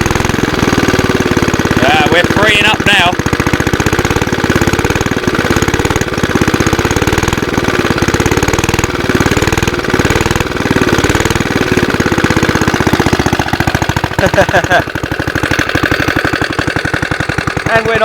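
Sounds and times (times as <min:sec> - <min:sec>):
small engine running: 0:00.0 - 0:18.0.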